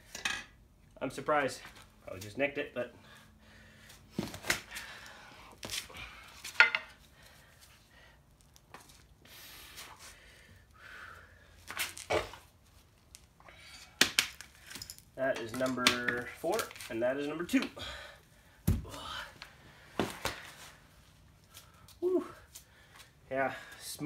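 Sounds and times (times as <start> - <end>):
metal parts clinking: 13.8 - 15.8.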